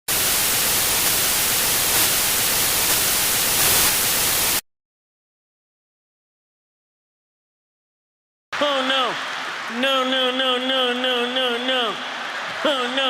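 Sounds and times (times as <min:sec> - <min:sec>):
static white noise hiss: 0:00.1 - 0:04.6.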